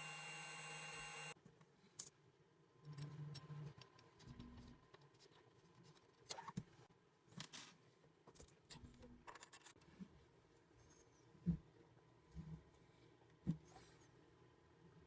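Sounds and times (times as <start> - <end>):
faint clicks and scrapes: 2.8 - 11.7.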